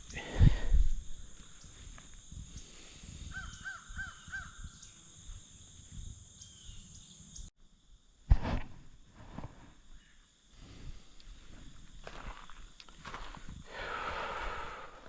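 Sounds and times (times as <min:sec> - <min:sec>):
crow cawing: 0:03.3 - 0:04.6
faint low scuffing: 0:11.4 - 0:13.6.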